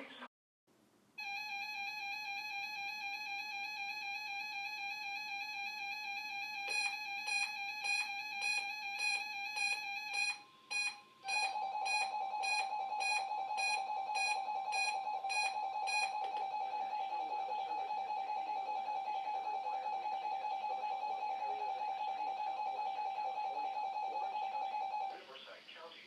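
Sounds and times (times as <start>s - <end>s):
steady electronic alert tone: 6.7s - 20.6s.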